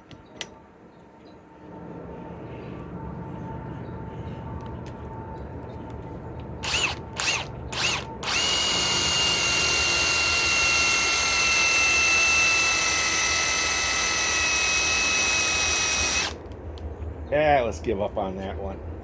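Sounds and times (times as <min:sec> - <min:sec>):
impact wrench whining: 0:06.6 - 0:16.4.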